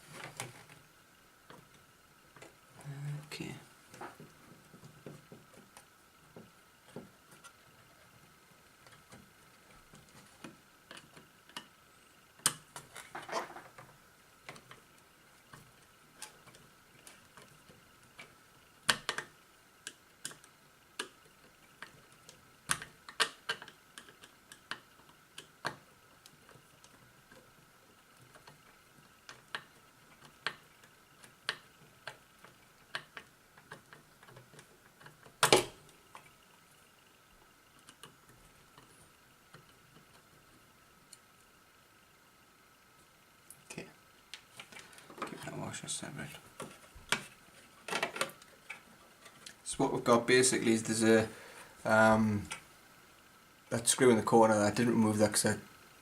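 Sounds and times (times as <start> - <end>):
faint high hum: 0.0 - 56.0
small parts and tools clicking: 8.7 - 36.6, 37.4 - 41.6, 43.4 - 49.7.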